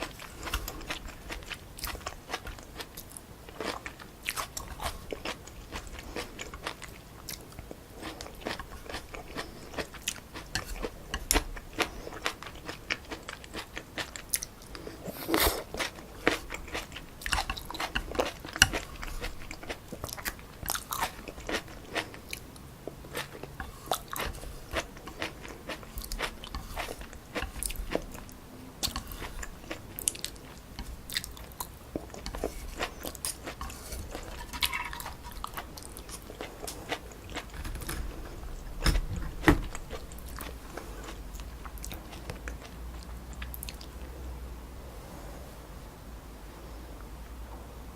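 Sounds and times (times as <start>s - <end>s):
close chewing of noodles: 0.0s - 44.1s.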